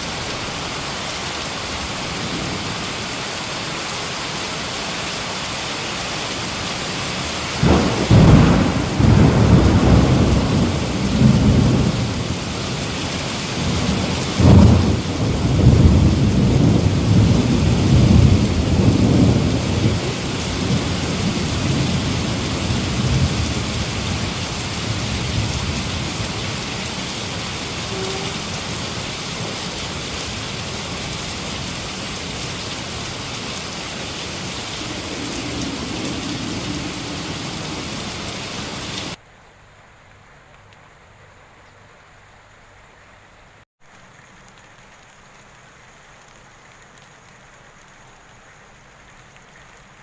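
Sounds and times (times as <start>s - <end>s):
heavy rain pouring: 0.0s - 39.2s, 43.9s - 50.0s
light rain: 0.0s - 50.0s
low thunder rumble: 7.6s - 29.6s, 34.3s - 39.2s.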